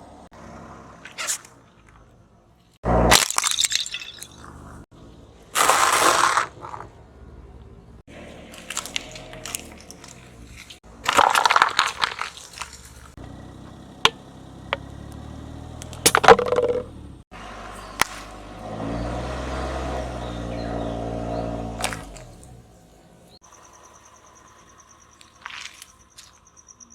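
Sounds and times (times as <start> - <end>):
car engine humming: 0.0 - 3.2, 6.5 - 26.6
tyre crushing things: 8.5 - 13.2, 15.8 - 16.9
sharp cracks: 17.9 - 18.5, 21.8 - 22.5.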